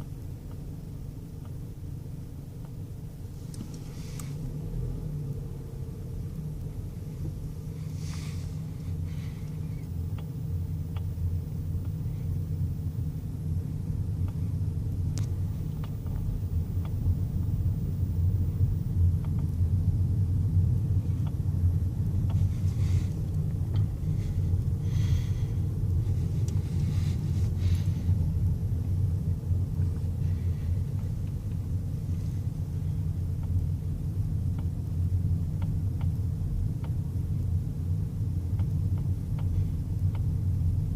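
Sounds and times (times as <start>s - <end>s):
car engine rumble: 0.0s - 40.9s
steering wheel clicking: 5.3s - 19.6s.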